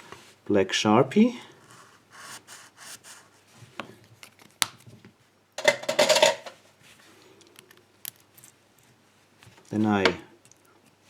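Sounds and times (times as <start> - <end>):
metal parts scraping clatter: 5.6 - 6.6
metal parts clicking: 7.3 - 8.6.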